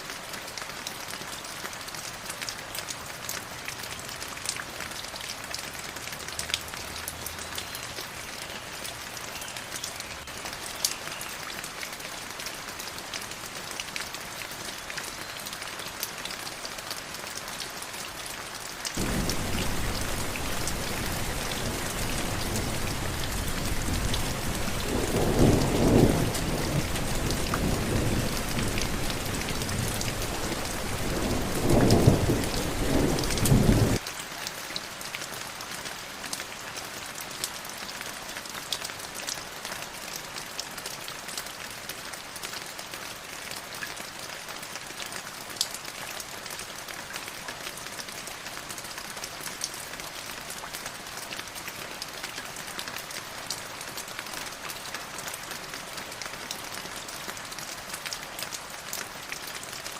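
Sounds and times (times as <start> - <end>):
steady rain: 0.0 - 59.9
deep rush of rain: 16.6 - 59.9
low rumbles of thunder: 19.0 - 34.0.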